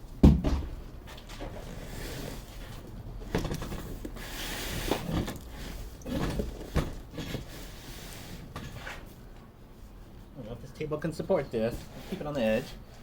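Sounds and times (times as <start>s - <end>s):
box knocks: 0.2s - 0.7s.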